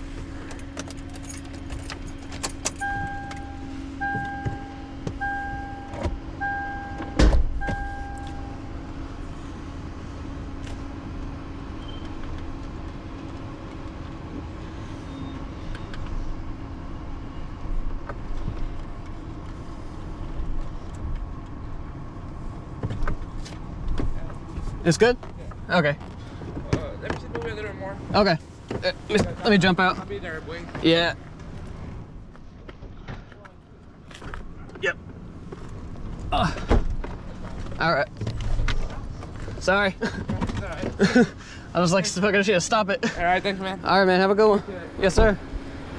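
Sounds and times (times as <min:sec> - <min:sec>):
steady low hum: 0:00.0 - 0:12.8
vehicle warning chime beeping: 0:01.4 - 0:09.0
heavy thump: 0:07.0 - 0:07.9.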